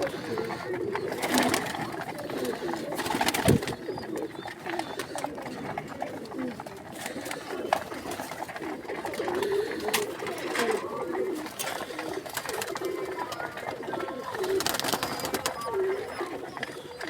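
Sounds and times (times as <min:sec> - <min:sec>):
pigeons cooing: 0:00.0 - 0:17.0.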